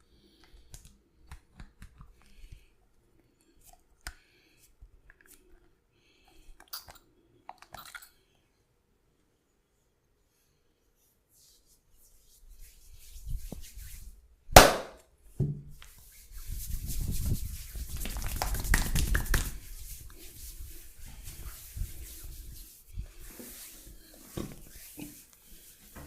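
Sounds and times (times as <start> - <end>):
hands rubbing and patting skin: 0.4 - 2.7, 11.0 - 14.8, 15.8 - 26.0
sharp crack: 14.6 - 15.0.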